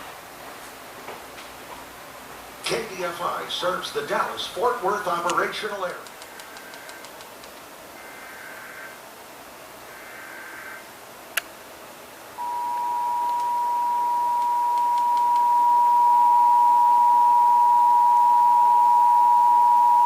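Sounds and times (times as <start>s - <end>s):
faint data burst: 12.4s - 18.8s
two-tone alarm: 12.4s - 20.0s.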